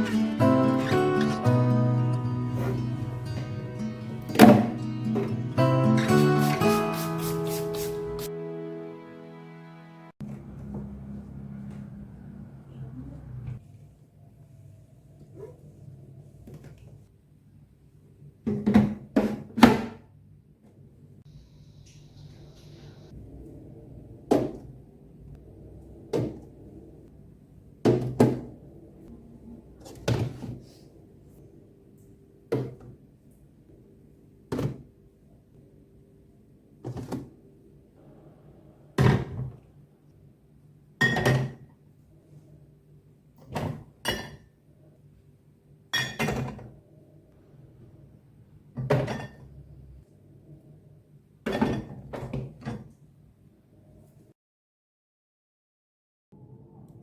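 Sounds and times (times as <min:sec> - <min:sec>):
items knocking and clattering: 0:04.3 - 0:05.4.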